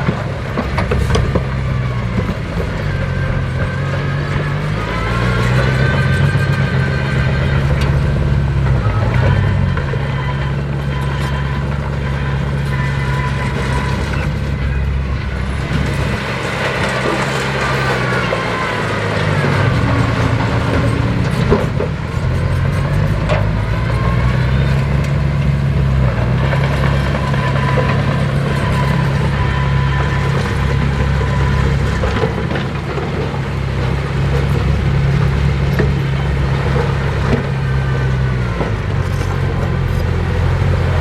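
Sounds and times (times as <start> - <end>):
heavy diesel engine running: 0.0 - 41.0
high whine: 0.8 - 22.4.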